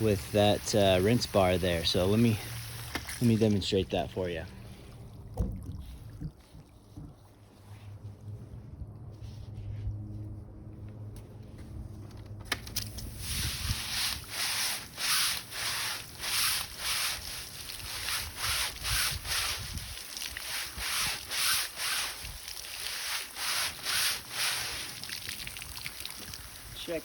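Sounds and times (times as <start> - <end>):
brushes scrubbing window screen: 0.0 - 3.8, 13.1 - 27.0.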